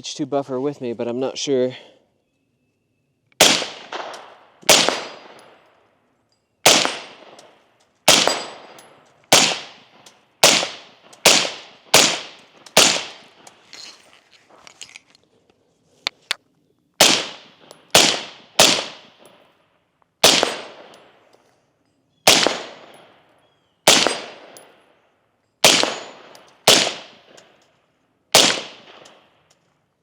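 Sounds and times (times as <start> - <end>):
suppressed rifle shots: 3.4 - 5.7, 6.6 - 13.5, 17.0 - 19.3, 20.2 - 21.2, 22.2 - 23.2, 23.8 - 24.8, 25.6 - 27.5, 28.3 - 29.3.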